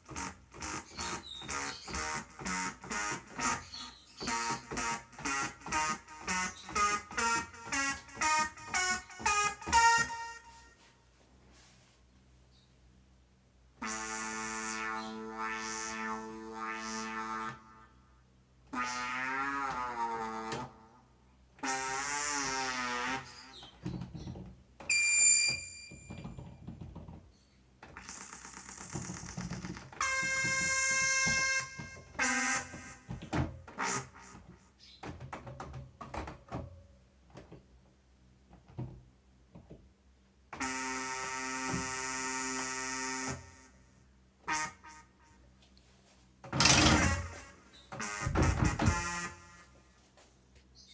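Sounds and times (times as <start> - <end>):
synthesizer held notes: 0.1 - 10.8.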